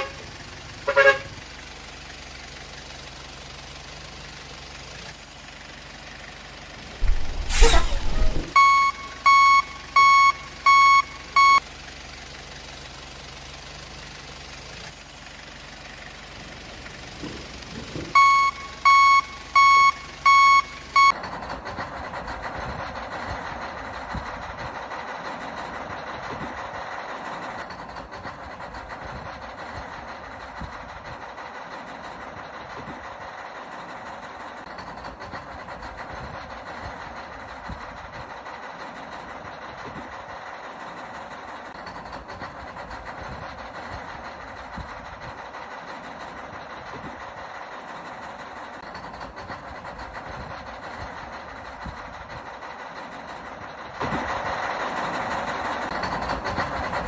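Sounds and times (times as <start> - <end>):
short falling whoosh: 7.0 - 8.6
toy truck reversing beeps: 7.1 - 11.7, 18.1 - 21.2.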